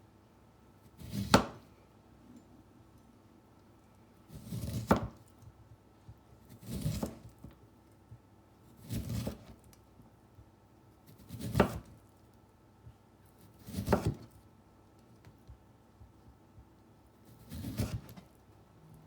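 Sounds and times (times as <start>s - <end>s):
knife slicing lemon: 1.0s - 1.6s, 4.3s - 5.2s, 6.5s - 7.4s, 8.8s - 9.6s, 11.1s - 12.0s, 13.4s - 14.4s, 17.2s - 18.3s.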